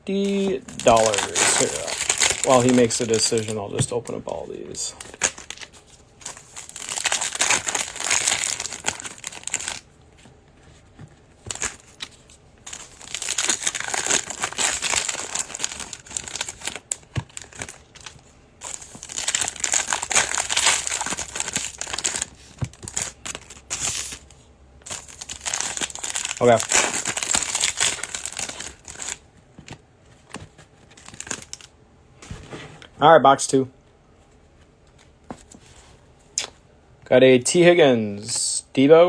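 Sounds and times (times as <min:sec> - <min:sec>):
plastic wrapping crinkling: 0:00.1 - 0:10.2, 0:10.8 - 0:31.7.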